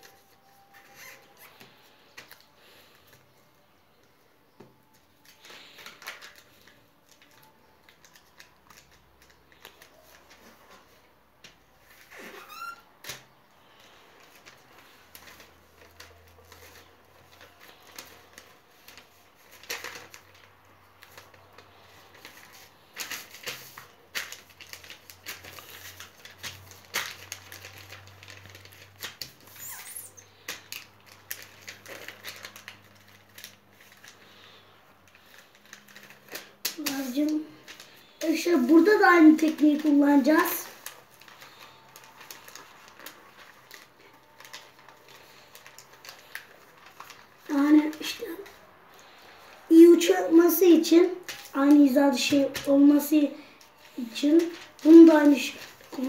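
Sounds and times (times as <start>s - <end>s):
paper rustling and creasing: 0.0s - 56.0s.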